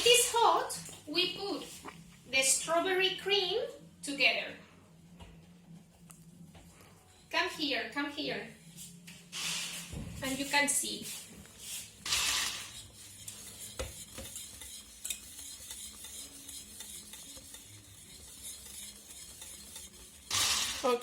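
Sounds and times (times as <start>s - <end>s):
spoon scraping a pot: 8.6s - 21.0s
spoon stirring in a pot: 9.7s - 21.0s.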